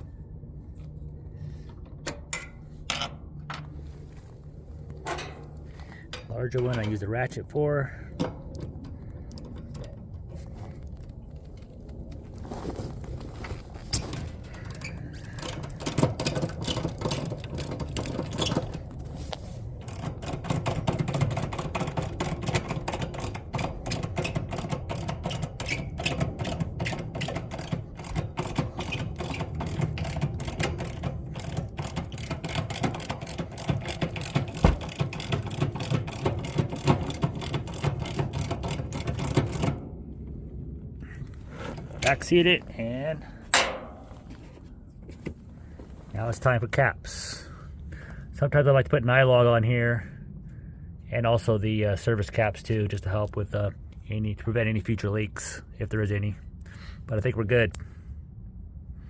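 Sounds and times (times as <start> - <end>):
ratchet clicking: 14.6 - 18.8, 19.8 - 39.8.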